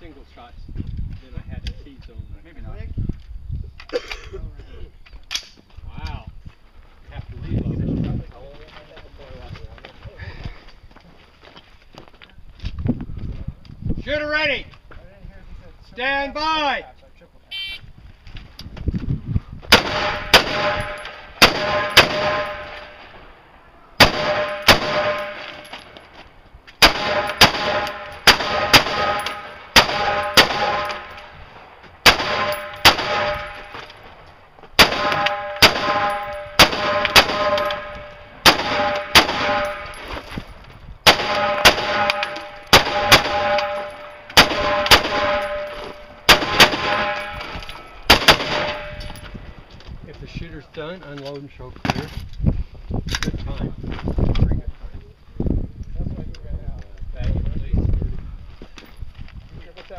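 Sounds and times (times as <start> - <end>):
rifle shots: 19.7 - 23.2, 24.0 - 26.0, 26.8 - 31.4, 32.0 - 34.0, 34.8 - 40.2, 41.0 - 49.3
steel targets ringing: 24.2 - 25.9, 27.0 - 31.3, 32.2 - 33.8, 35.0 - 40.1, 41.2 - 49.3.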